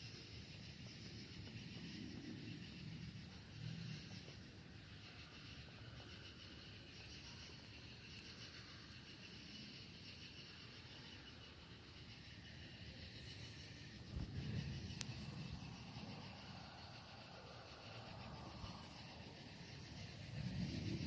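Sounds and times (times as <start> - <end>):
insects chirring: 0.0 - 21.0
low rumble: 13.5 - 21.0.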